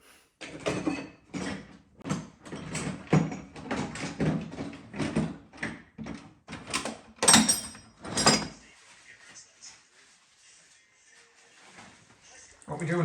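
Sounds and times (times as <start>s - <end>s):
knocks and clattering: 0.4s - 8.6s.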